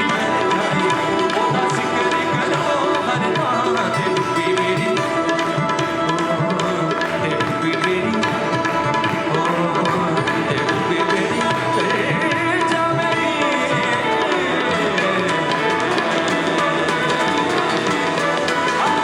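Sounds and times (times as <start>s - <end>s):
quick hand-drum beat: 0.0s - 19.0s
sustained keyboard chords: 0.0s - 19.0s.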